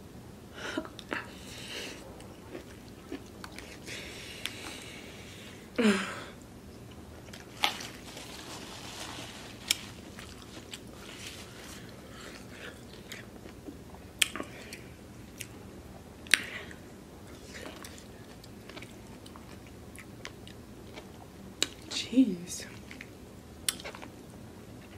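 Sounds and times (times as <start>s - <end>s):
person chewing food: 0.8s - 5.6s, 6.4s - 21.9s, 22.8s - 24.9s.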